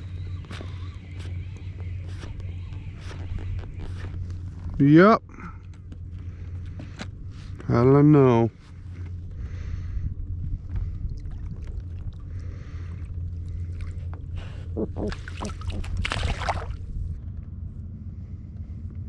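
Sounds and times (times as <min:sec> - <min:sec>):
wind rumble on microphone: 0:05.8 - 0:19.0
water sloshing around kayak: 0:10.6 - 0:17.1
splashing or handling noise: 0:10.8 - 0:17.1.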